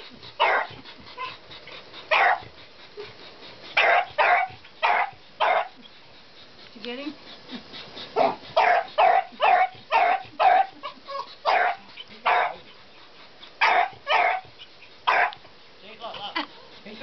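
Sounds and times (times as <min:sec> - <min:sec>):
dog barking: 0:00.4 - 0:00.8, 0:02.1 - 0:02.4, 0:03.8 - 0:05.8, 0:08.2 - 0:12.6, 0:13.6 - 0:14.5, 0:15.1 - 0:15.4.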